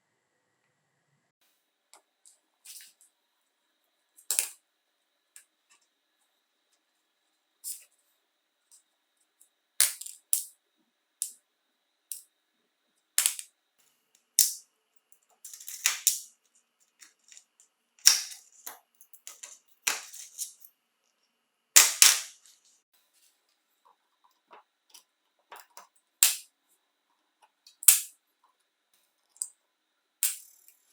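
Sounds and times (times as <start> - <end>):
small hard parts clicking: 15.3 - 20.7, 30.2 - 30.9.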